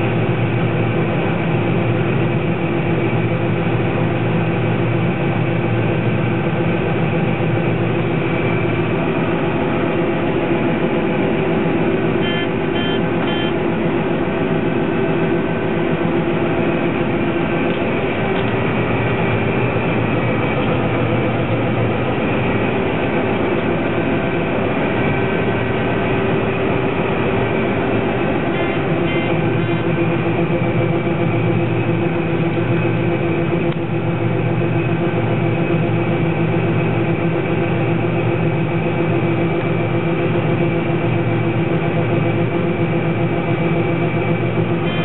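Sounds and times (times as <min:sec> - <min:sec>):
combine harvester engine drone: 0:00.0 - 0:45.0
short high beeps: 0:12.2 - 0:13.6, 0:28.6 - 0:29.8.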